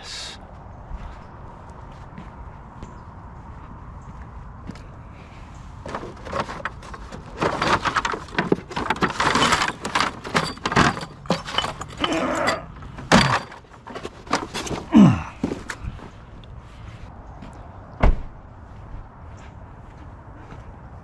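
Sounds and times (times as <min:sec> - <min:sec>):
scrap pieces clattering: 0:05.9 - 0:15.7.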